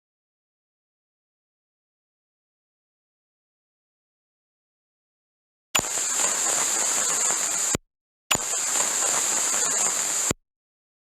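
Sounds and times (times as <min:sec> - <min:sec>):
crackling static hiss: 0:05.8 - 0:07.8, 0:08.4 - 0:10.4.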